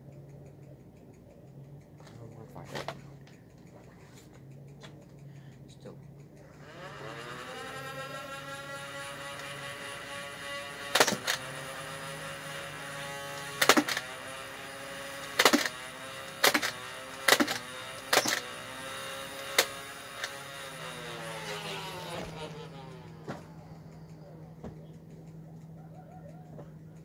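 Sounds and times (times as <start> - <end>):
toy blaster flywheels whirring: 6.1 - 27.0
sharp firing snaps: 10.8 - 11.7, 12.9 - 25.8.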